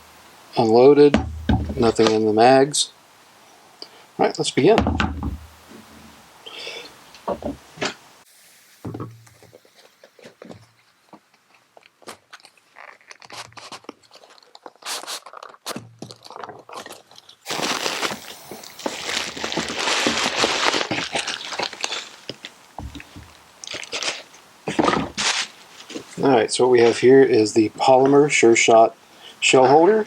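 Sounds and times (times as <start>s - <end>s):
plastic packaging crinkling: 12.0s - 26.2s.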